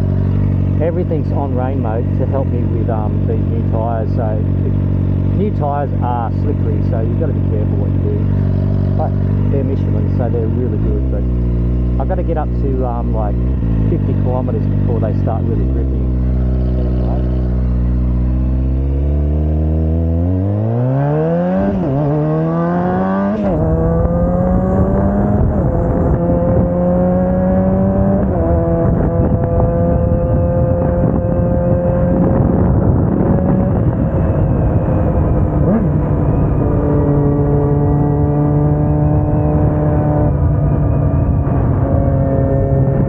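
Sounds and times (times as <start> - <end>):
motorcycle engine accelerating: 0.0 - 43.0
wind rush: 22.8 - 43.0.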